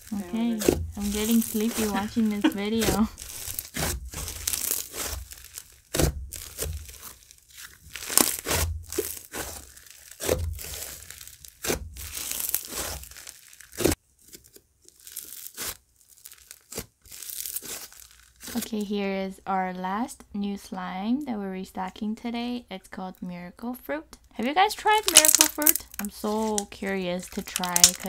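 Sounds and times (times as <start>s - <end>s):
slime crackling and popping: 0.0s - 18.7s, 24.4s - 28.0s.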